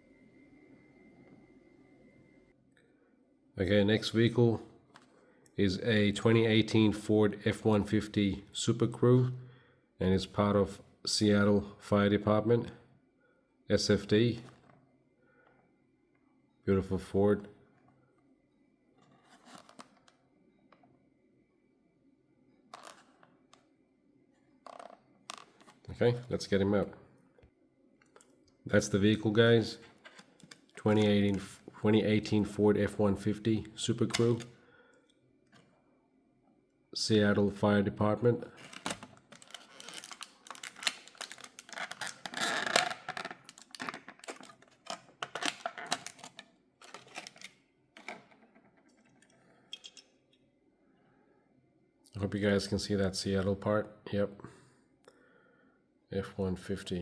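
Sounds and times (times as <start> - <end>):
packaging rustling: 19.1 - 20.1, 29.9 - 31.7, 38.5 - 48.3.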